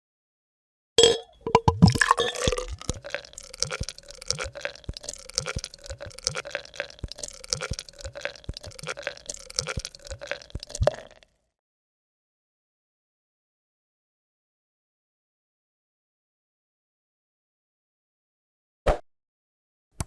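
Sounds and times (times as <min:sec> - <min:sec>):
beer glugging from bottle: 0:01.0 - 0:11.2.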